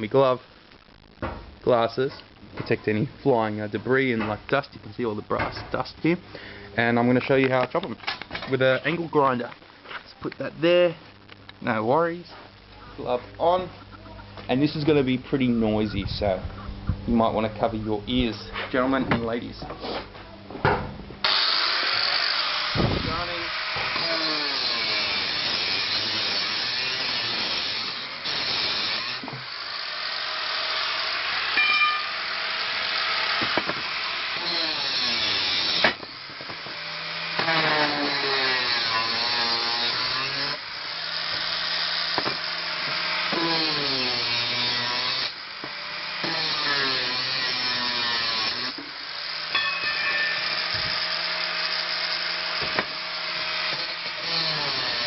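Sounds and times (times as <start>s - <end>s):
angle grinder cutting metal: 21.2s - 55.0s.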